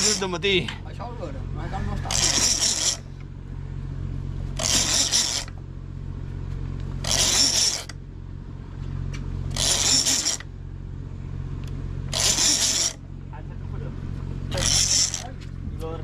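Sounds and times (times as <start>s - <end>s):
fishing reel ratcheting whirr: 0.0s - 0.4s, 2.0s - 3.1s, 4.6s - 5.6s, 7.0s - 8.0s, 9.5s - 10.5s, 12.1s - 13.0s, 14.5s - 15.4s
steady low hum: 0.0s - 16.0s.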